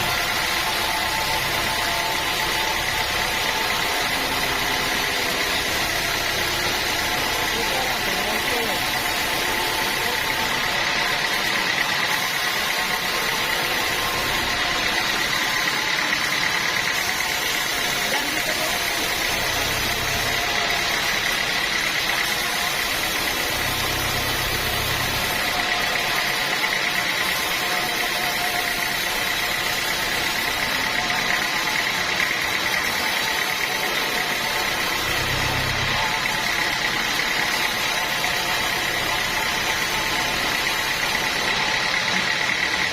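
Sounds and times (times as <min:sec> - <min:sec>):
high whine: 0:00.0 - 0:26.7
sawmill machinery drone: 0:00.0 - 0:42.9.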